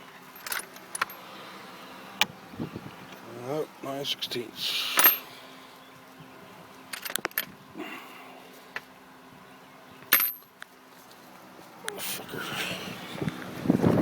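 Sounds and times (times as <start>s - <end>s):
metal hand tools clinking: 0.4s - 1.2s, 10.1s - 10.4s.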